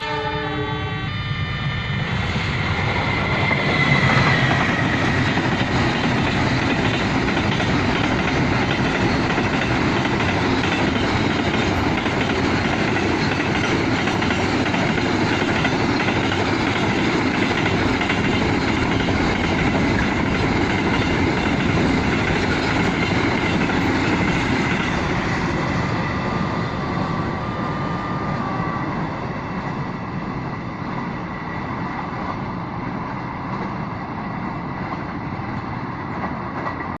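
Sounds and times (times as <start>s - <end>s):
train horn: 0.0s - 1.9s
freight train wagons rumbling: 2.0s - 37.0s.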